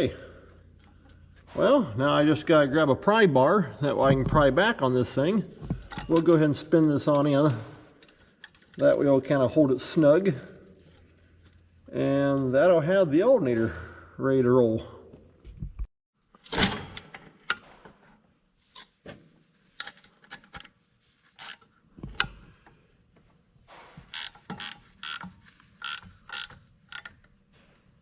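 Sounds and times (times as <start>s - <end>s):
ratchet wrench clicking: 21.4s - 21.7s, 24.1s - 27.2s.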